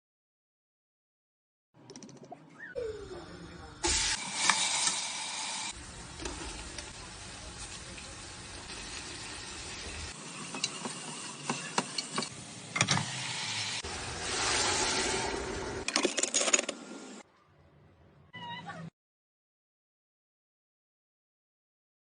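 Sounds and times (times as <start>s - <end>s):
food sizzling in a pan: 3.8s - 15.8s.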